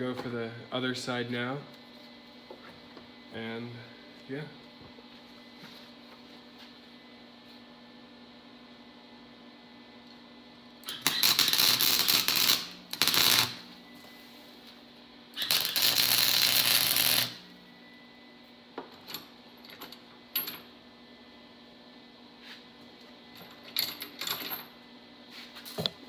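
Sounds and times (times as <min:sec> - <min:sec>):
arc welder sputtering crackle: 0:10.8 - 0:13.8, 0:15.4 - 0:17.5.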